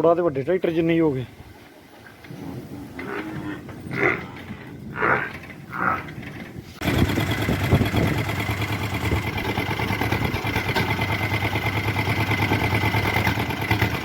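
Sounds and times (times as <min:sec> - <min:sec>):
tractor engine idling: 0:06.1 - 0:14.0.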